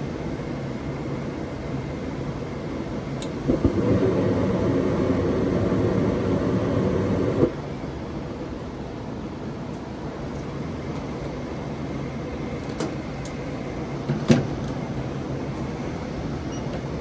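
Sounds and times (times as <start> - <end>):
gas furnace humming: 0.2 - 8.1
burners lighting with a rush: 3.3 - 7.6.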